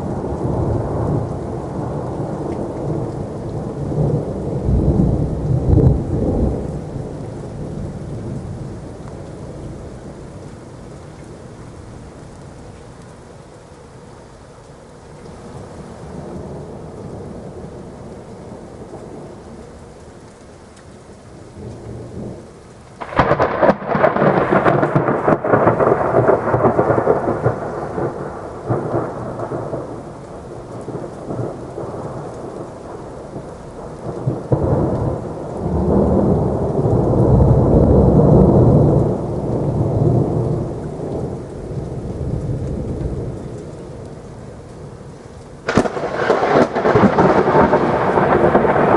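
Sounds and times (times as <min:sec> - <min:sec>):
rolling thunder: 0:00.0 - 0:10.5, 0:23.0 - 0:48.9
steady rain: 0:00.0 - 0:48.9
sharp thunderclap: 0:23.0 - 0:30.0, 0:45.7 - 0:48.9.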